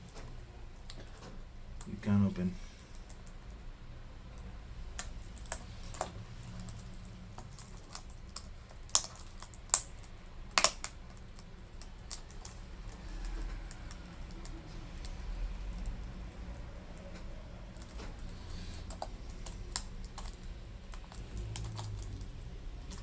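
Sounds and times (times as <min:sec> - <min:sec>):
laptop keyboard keys clicking: 0:17.8 - 0:23.0.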